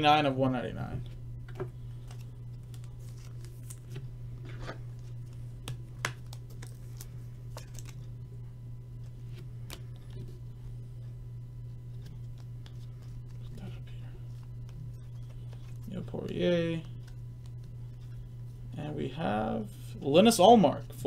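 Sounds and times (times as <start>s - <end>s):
low electrical hum: 0.0s - 21.0s
cards clicking and rustling: 1.9s - 8.1s, 11.9s - 18.2s.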